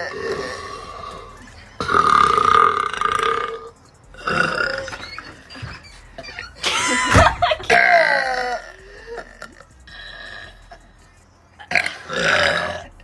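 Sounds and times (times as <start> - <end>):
woman burping loudly: 0.0 - 4.9, 6.7 - 9.6, 11.6 - 13.0.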